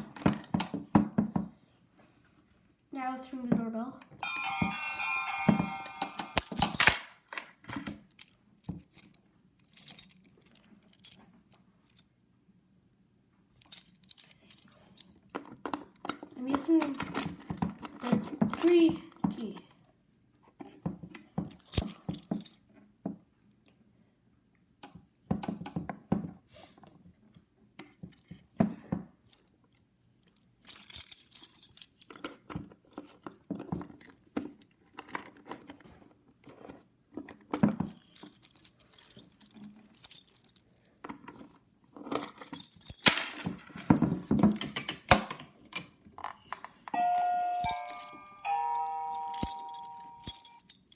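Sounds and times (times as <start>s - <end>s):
keys jangling in a lock: 6.0s - 12.1s, 13.6s - 18.8s, 21.5s - 22.7s, 29.3s - 32.4s, 37.6s - 45.0s, 47.0s - 50.9s.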